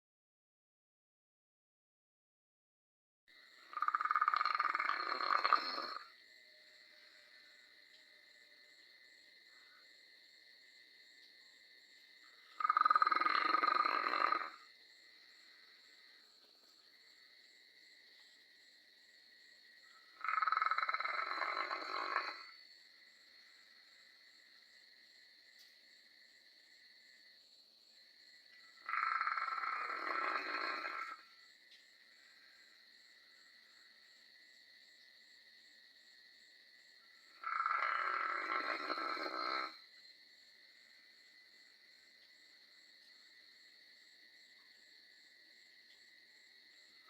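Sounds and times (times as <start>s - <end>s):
dog snoring: 3.8s - 6.1s, 12.7s - 14.7s, 20.3s - 22.5s, 28.9s - 31.2s, 37.4s - 39.8s.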